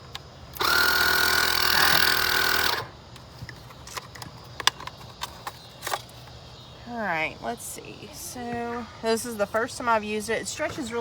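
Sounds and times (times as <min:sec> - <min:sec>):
small electric motor whining: 0:00.6 - 0:02.9.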